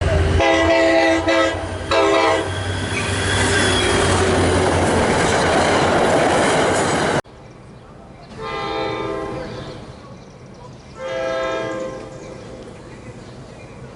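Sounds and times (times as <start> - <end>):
train wheels on rails: 0.0 - 13.9
train horn blasts: 0.1 - 2.8, 8.4 - 9.8, 11.0 - 12.1.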